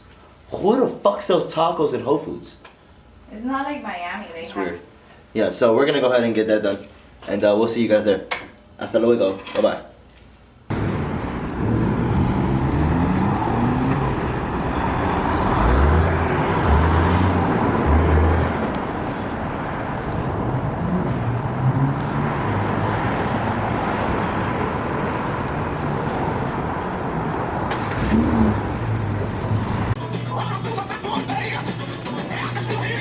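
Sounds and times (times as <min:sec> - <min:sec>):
car engine revving up: 0:10.7 - 0:30.0
car road noise: 0:10.7 - 0:30.0.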